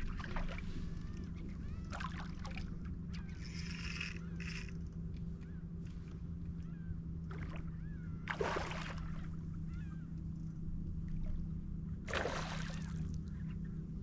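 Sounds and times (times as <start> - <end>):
steady low hum: 0.0 - 14.0
water splashing: 8.3 - 9.2.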